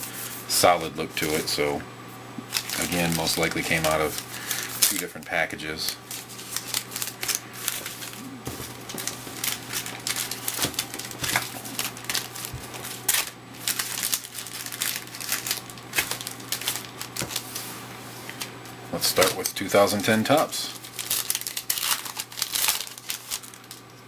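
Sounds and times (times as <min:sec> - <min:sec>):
card pack wrappers crinkling: 0:02.4 - 0:24.0.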